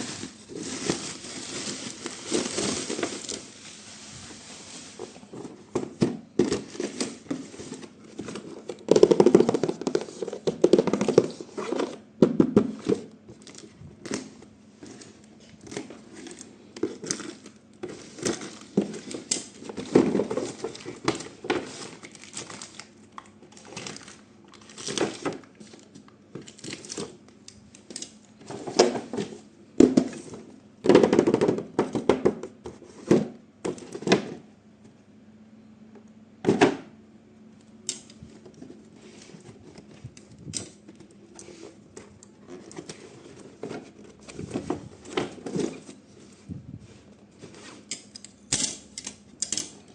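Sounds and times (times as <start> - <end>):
packaging crinkling and tearing: 0.0 - 3.9, 15.6 - 27.2.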